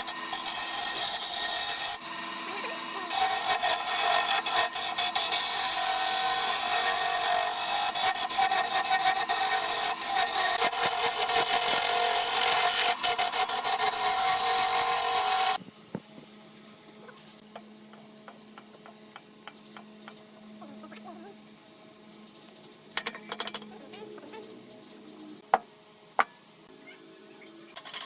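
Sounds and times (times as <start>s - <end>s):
lathe cutting wood: 0.0s - 15.6s.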